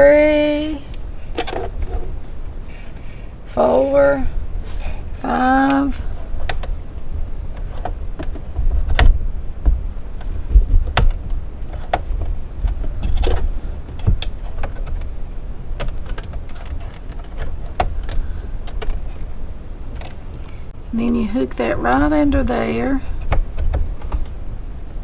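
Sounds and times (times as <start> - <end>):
low handling bumps: 0.0 - 25.0.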